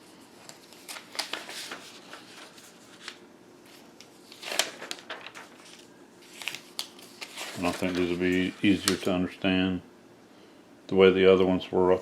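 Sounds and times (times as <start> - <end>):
paper rustling and crinkling: 0.1 - 9.2.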